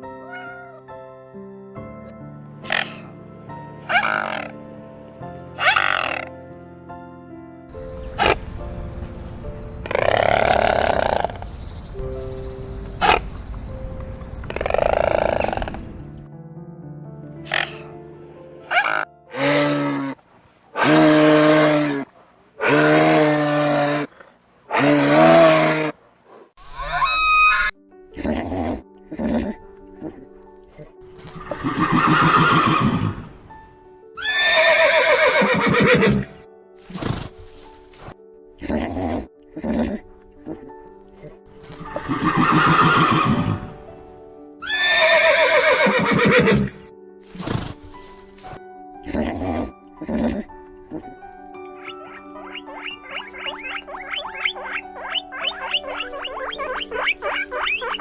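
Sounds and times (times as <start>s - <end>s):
background music: 0.0s - 21.8s, 26.9s - 58.0s
animal calling low notes: 0.3s - 0.8s, 2.6s - 3.2s, 3.8s - 4.7s, 5.6s - 6.3s, 9.8s - 11.6s, 14.5s - 16.0s, 49.0s - 58.0s
long animal calls: 0.3s - 0.8s, 2.6s - 3.2s, 3.8s - 4.7s, 5.6s - 6.4s, 9.9s - 11.5s, 14.5s - 15.9s, 17.4s - 18.0s, 18.6s - 20.2s, 20.8s - 26.0s, 38.7s - 43.8s, 51.8s - 58.0s.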